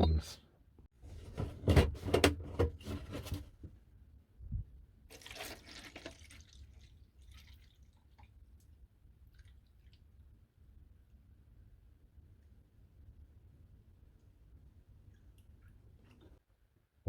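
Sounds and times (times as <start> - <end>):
liquid splashing: 5.1 - 8.3.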